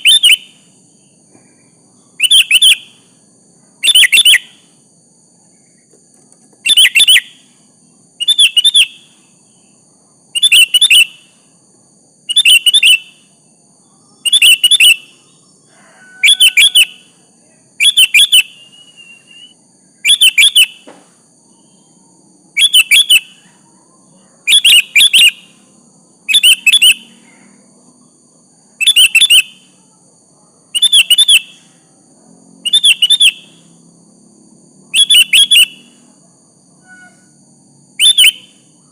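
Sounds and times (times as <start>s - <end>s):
bird chirping phrases: 0.0s - 4.8s, 6.6s - 7.6s, 8.2s - 11.5s, 12.2s - 20.8s, 21.5s - 25.6s, 26.3s - 30.0s, 30.8s - 31.8s, 32.6s - 33.6s, 34.9s - 36.0s, 38.0s - 38.8s.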